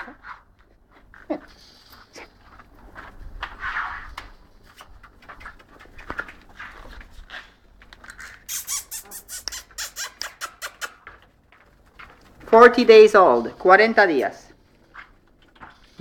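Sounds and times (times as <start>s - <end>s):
puppies squeaking and whimpering: 8.0s - 11.2s
quick sharp clicks: 8.5s - 11.0s.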